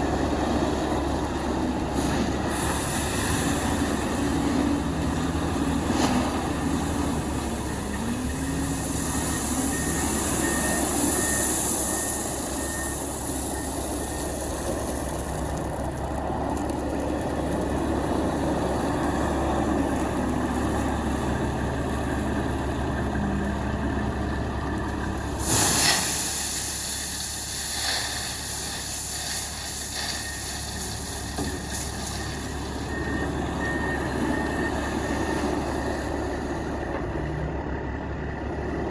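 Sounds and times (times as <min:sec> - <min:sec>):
diesel truck engine running: 0:00.0 - 0:38.9
short sharp burst of noise: 0:25.4 - 0:32.4.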